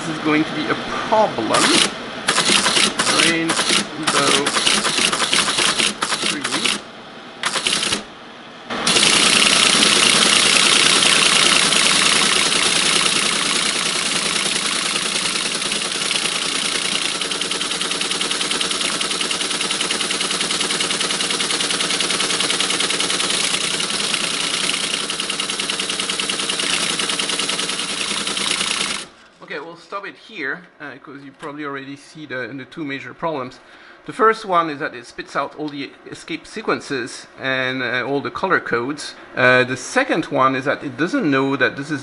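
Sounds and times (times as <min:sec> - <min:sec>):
teleprinter clattering: 0:01.6 - 0:06.8, 0:07.4 - 0:08.1, 0:08.9 - 0:29.1.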